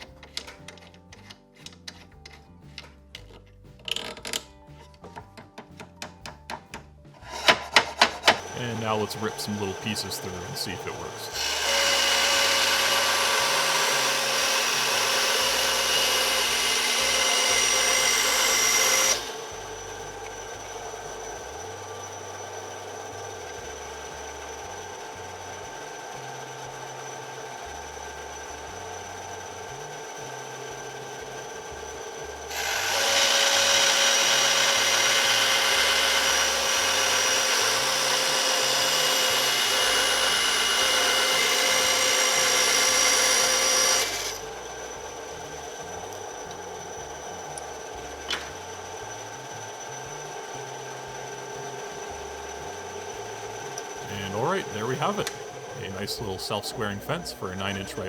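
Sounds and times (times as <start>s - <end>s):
band saw cutting wood: 7.2s - 24.4s, 32.4s - 58.0s.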